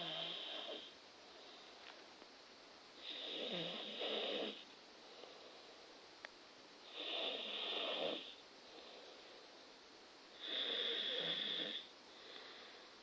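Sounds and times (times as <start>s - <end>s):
person snoring: 0.0s - 0.9s, 3.0s - 4.6s, 6.9s - 8.4s, 10.4s - 12.6s.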